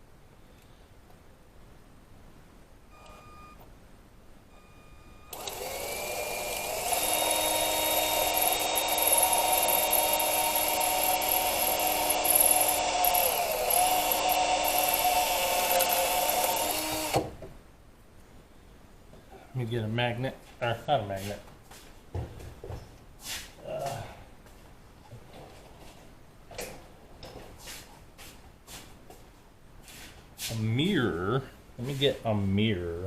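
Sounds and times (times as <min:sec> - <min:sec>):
electric drill whining: 0:05.3 - 0:17.3.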